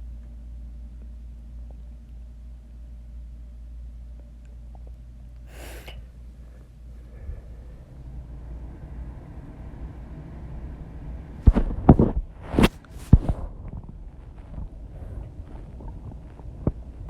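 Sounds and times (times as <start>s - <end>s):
short breath: 5.5s - 8.0s
low microphone rumble: 5.5s - 17.0s
microphone thumps and rubs: 11.4s - 17.0s.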